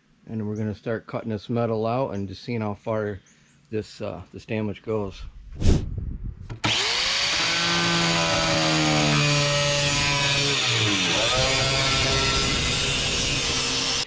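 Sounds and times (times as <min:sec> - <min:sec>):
power tool cutting sheet metal: 0:06.6 - 0:14.0.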